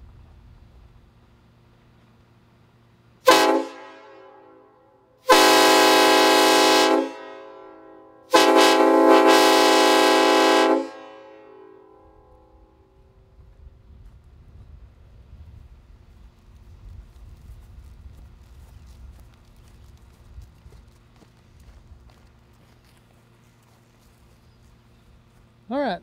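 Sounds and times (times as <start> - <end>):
five-chime train horn blasts: 3.2 - 12.8.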